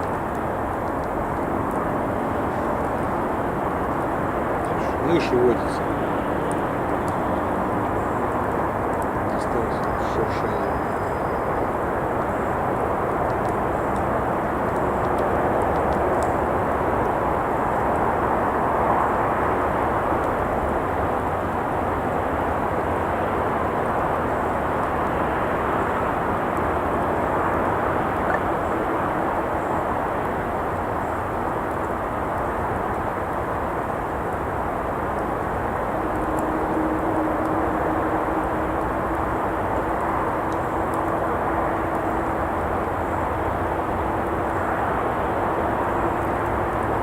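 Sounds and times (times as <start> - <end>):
constant hum: 0.0 - 12.0
faint campfire crackles: 0.0 - 47.0
traffic hiss and rumble: 0.0 - 47.0
road traffic rushing: 1.4 - 11.0.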